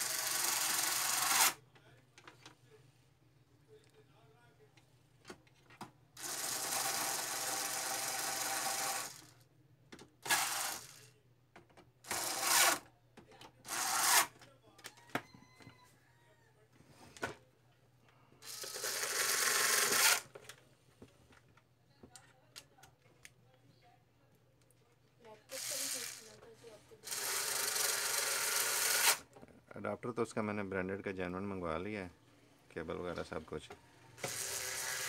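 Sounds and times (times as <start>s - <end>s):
small electric power tool: 0.0s - 1.6s, 6.2s - 9.3s, 10.2s - 11.0s, 12.1s - 12.8s, 13.7s - 14.3s, 18.4s - 20.3s, 25.5s - 26.3s, 27.0s - 29.3s, 34.2s - 35.0s.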